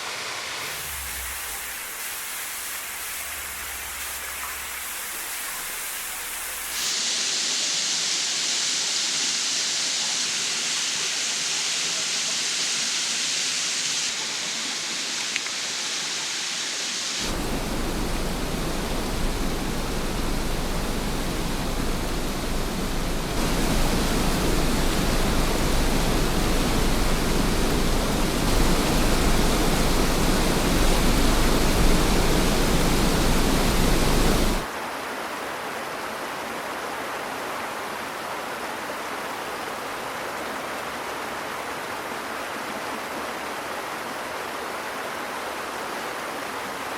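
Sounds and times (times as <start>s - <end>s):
waterfall roaring: 0.0s - 34.7s.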